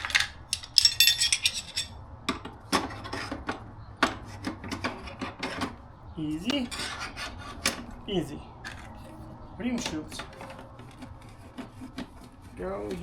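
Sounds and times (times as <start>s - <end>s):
metal hand tools clinking: 0.0s - 2.0s.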